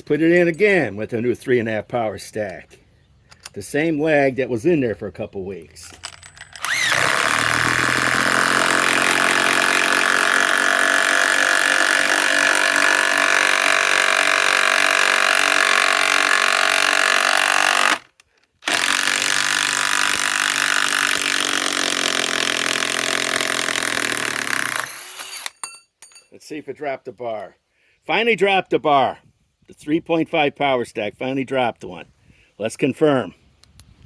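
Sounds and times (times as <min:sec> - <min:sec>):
impact wrench hammering: 0:06.1 - 0:17.9.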